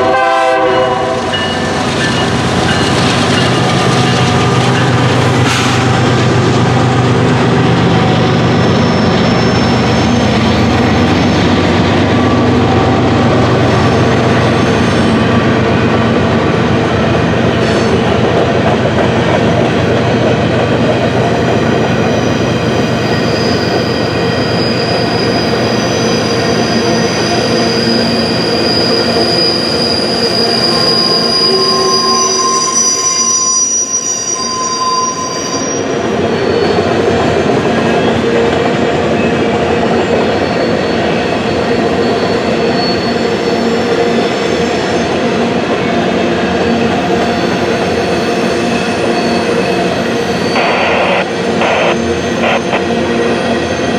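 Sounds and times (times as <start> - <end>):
freight train rumbling past: 0.0 - 33.1
train wheels squealing: 1.2 - 15.8, 17.2 - 53.9.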